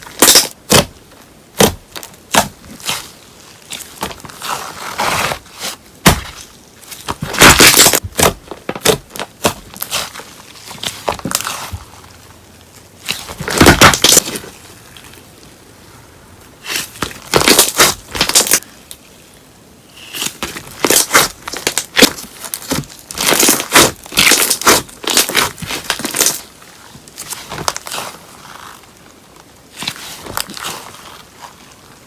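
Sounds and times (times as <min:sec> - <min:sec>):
slime squished by hand crackling: 0:16.6 - 0:18.7, 0:20.1 - 0:26.5.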